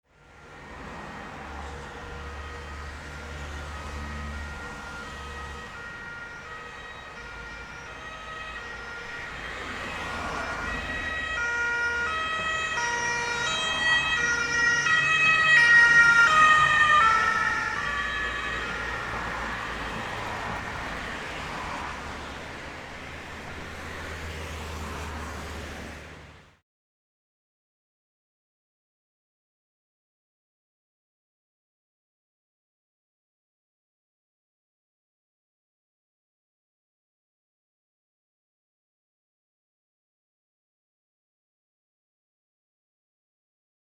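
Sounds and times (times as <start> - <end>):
ambulance siren warbling: 0.4 - 25.3
low traffic rumble: 0.4 - 26.6.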